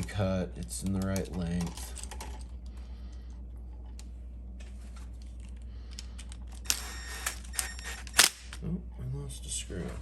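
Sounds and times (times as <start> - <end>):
wires clicking into outlet terminals: 0.0 - 2.9
steady low hum: 0.0 - 10.0.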